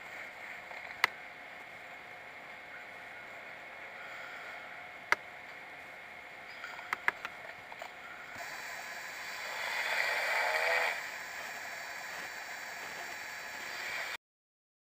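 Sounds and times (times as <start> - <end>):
steady hiss: 0.0 - 14.2
person snoring: 8.4 - 14.2.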